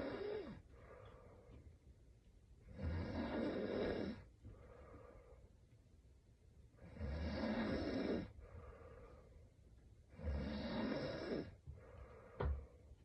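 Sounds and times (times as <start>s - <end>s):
woman snoring: 0.0s - 0.6s, 2.7s - 4.3s, 6.8s - 8.4s, 10.2s - 11.5s
quiet breathing: 0.0s - 13.0s.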